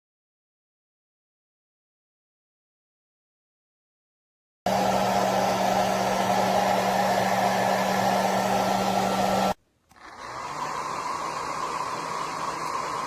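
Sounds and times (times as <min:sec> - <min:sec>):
hair dryer blowing: 0:04.7 - 0:13.0.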